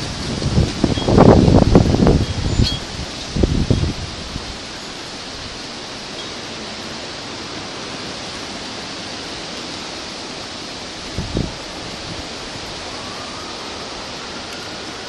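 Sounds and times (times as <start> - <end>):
wind buffeting microphone: 0.0 - 5.8, 10.9 - 15.0
high wind rushing: 0.0 - 6.1, 10.2 - 15.0.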